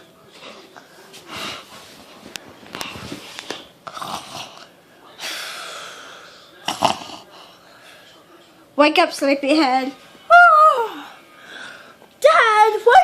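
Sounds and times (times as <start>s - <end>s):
child imitating snoring: 3.9s - 4.6s.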